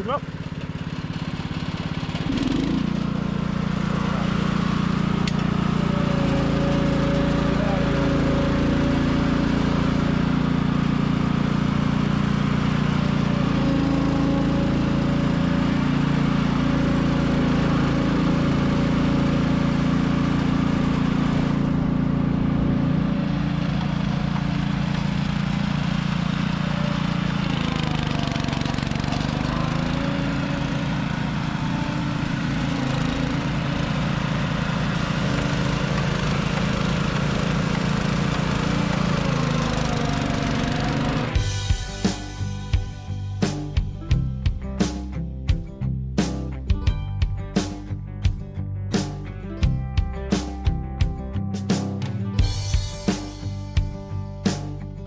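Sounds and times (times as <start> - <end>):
small engine revving and running: 0.0 - 42.2.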